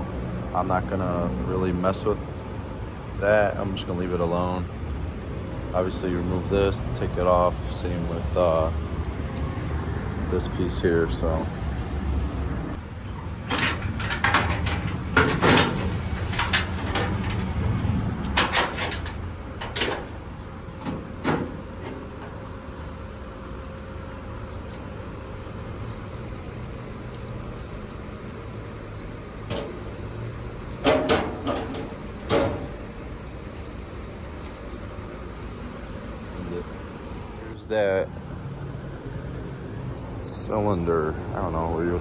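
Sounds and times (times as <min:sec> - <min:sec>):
steady low hum: 0:00.0 - 0:42.0
metal clanks and knocks: 0:13.2 - 0:22.4, 0:29.5 - 0:33.0.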